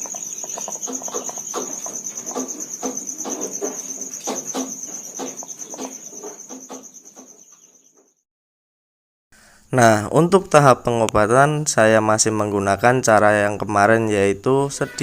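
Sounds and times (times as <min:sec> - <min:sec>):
crickets trilling: 0:00.0 - 0:08.1.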